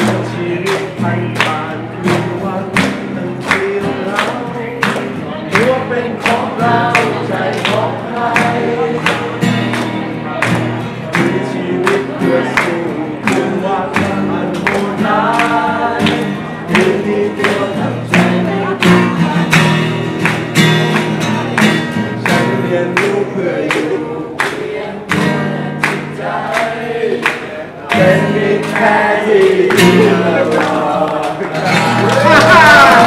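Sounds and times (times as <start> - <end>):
person singing: 11.1 - 19.8, 25.8 - 33.0.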